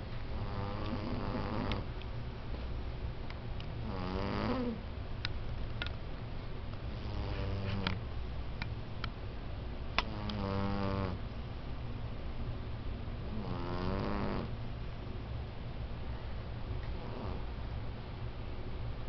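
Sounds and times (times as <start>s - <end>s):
cat snoring: 0.4s - 1.9s, 3.8s - 4.8s, 7.0s - 7.8s, 10.1s - 11.2s, 13.3s - 14.5s, 17.0s - 17.5s.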